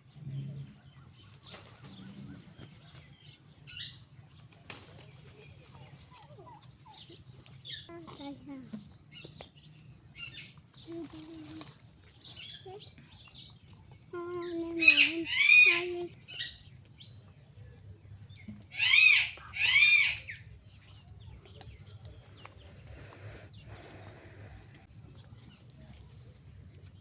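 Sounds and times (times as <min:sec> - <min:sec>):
sparrow chirping: 0:05.9 - 0:25.0.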